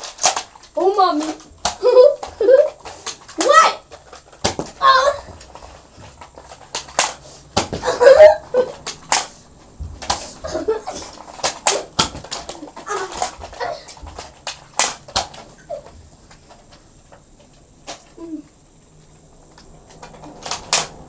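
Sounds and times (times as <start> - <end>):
toy blasters snapping and clacking: 0.0 - 21.0
people yelping: 3.4 - 3.9, 4.8 - 5.3, 7.8 - 8.8.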